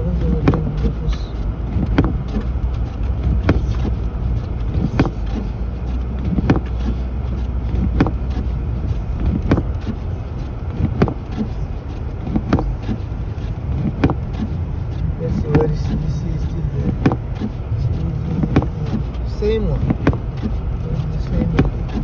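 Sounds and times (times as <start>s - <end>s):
engine and road rumble: 0.0s - 22.0s
windshield wipers thumping: 0.0s - 22.0s.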